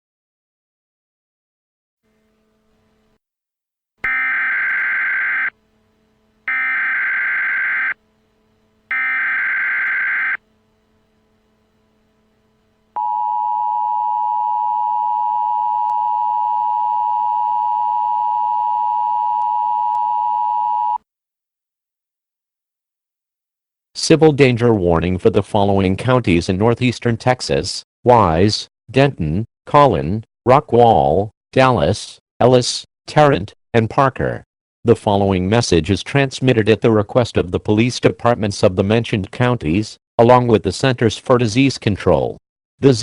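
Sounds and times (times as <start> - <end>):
buzzy digital data tones: 4.1 - 5.5, 6.5 - 8.0, 8.9 - 10.4
two-tone attention signal: 4.1 - 5.5, 6.5 - 8.0, 8.9 - 10.4.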